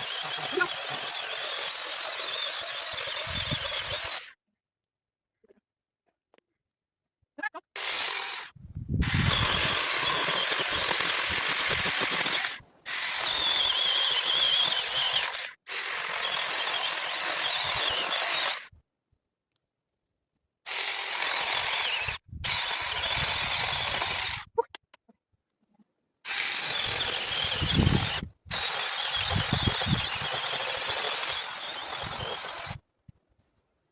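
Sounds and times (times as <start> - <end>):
small chainsaw cutting wood: 0.0 - 4.4, 7.8 - 18.7, 20.7 - 24.5, 26.2 - 32.8.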